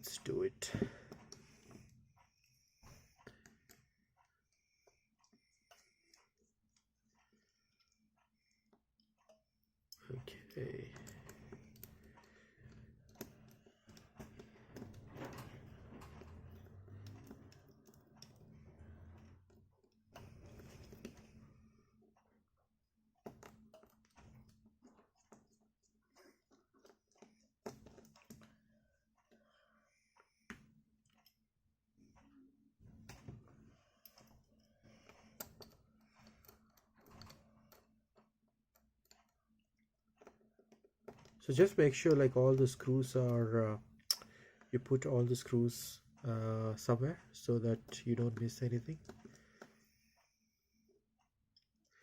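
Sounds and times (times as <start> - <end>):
tools handled on a bench: 9.2 - 21.4, 33.0 - 39.4, 47.7 - 49.8.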